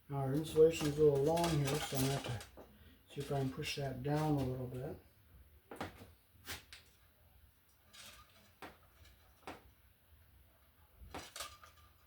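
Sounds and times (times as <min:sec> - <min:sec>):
faint handling clicks and scrapes: 0:00.4 - 0:04.8, 0:07.7 - 0:09.8, 0:10.6 - 0:12.0.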